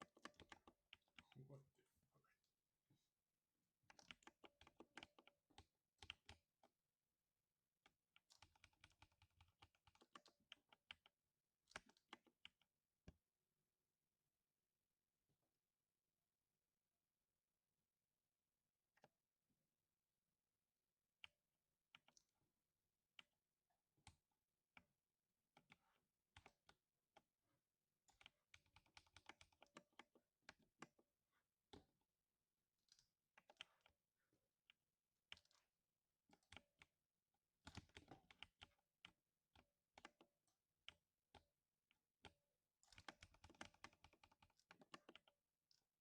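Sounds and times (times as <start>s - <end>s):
mechanical keyboard typing: 28.1s - 30.6s, 42.2s - 45.8s.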